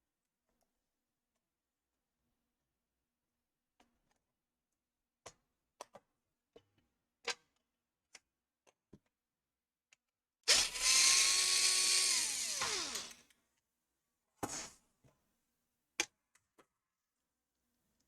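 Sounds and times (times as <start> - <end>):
electric screwdriver motor whine: 10.5 - 13.2.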